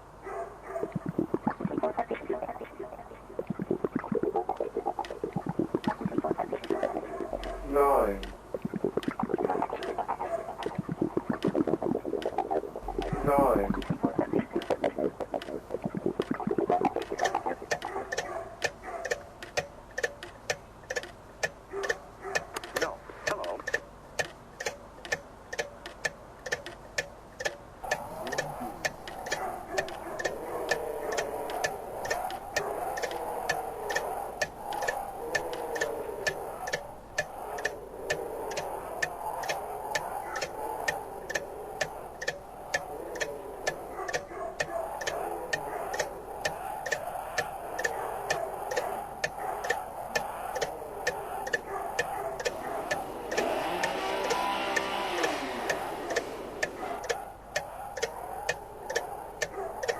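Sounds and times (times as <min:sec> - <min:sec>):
steady even ticking: 0:00.0 - 0:59.9
wavering mid-pitched sound: 0:01.0 - 0:18.1, 0:52.4 - 0:57.6.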